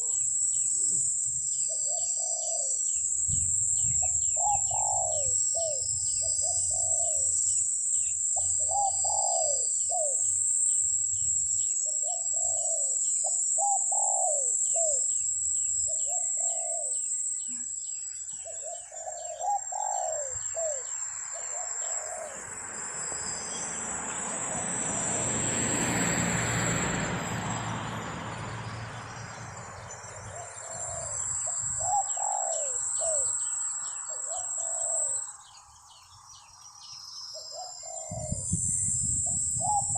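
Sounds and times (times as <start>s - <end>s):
doves cooing: 0.0s - 10.3s, 11.8s - 15.1s, 15.9s - 22.6s, 29.4s - 35.6s, 37.4s - 39.9s.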